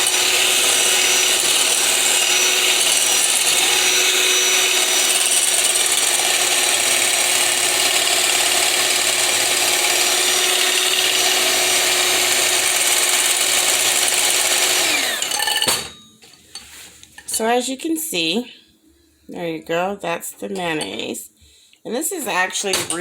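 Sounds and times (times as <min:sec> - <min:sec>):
electric blender motor running: 0:00.0 - 0:15.6.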